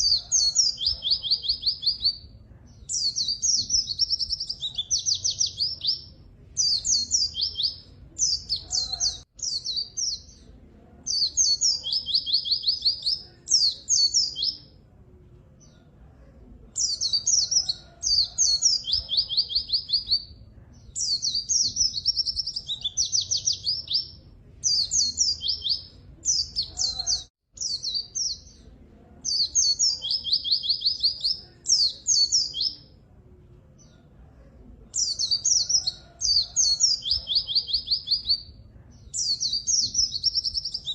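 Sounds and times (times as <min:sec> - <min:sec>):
bird trilling song: 0:00.0 - 0:14.8, 0:16.7 - 0:33.0, 0:34.9 - 0:40.9
faint low hum: 0:12.8 - 0:18.4.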